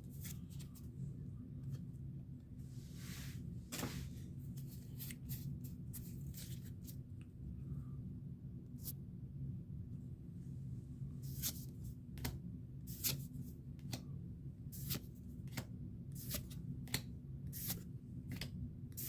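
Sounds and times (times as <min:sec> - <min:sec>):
low steady hum: 0:00.0 - 0:19.0
cards clicking and rustling: 0:11.3 - 0:14.0.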